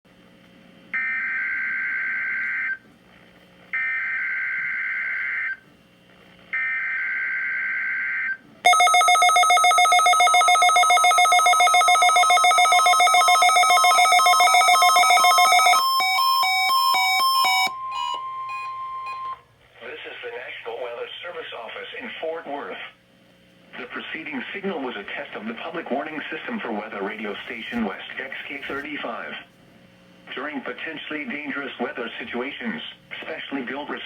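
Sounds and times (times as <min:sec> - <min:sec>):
stepping beeps: 0:08.7 - 0:19.4.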